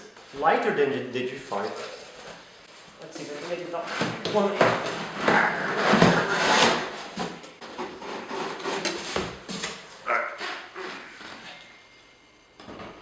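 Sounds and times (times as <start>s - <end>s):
cardboard and styrofoam scraping: 3.2s - 9.4s.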